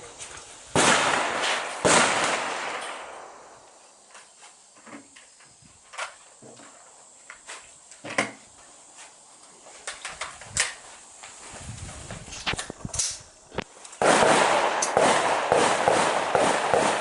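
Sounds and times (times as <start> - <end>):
sharp cracks: 0.7 - 3.7, 12.3 - 17.0.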